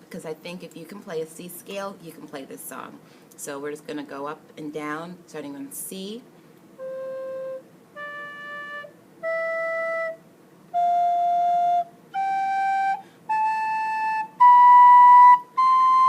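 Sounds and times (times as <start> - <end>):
recorder playing a scale: 6.8 - 16.0.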